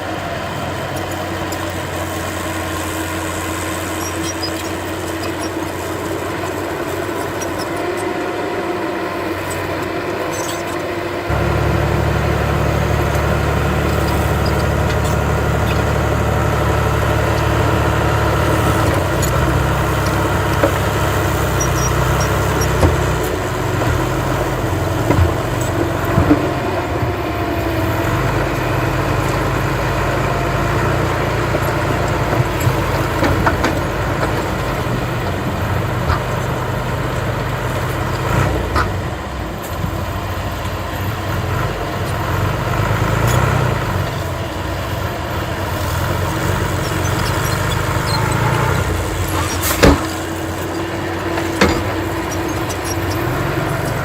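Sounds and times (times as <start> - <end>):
diesel machinery droning: 0.0 - 54.0
knocks and clanks: 18.4 - 27.1, 31.8 - 36.6, 49.2 - 53.1.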